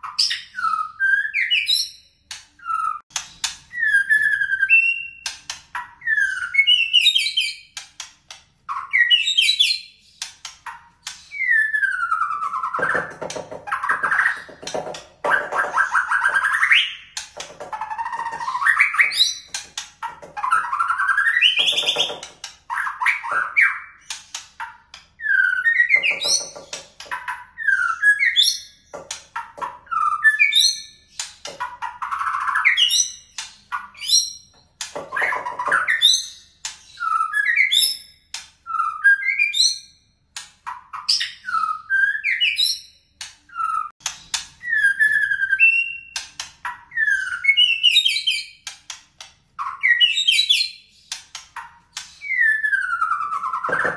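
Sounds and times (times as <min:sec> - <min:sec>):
bird singing whistled phrases: 0:11.3 - 0:12.8, 0:52.2 - 0:53.9.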